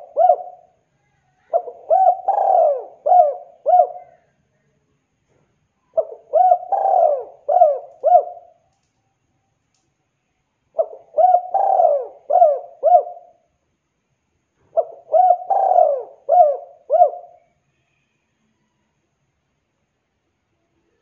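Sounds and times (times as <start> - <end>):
dove cooing: 0.0 - 0.7, 1.4 - 4.3, 5.9 - 8.6, 10.8 - 13.4, 14.7 - 17.5.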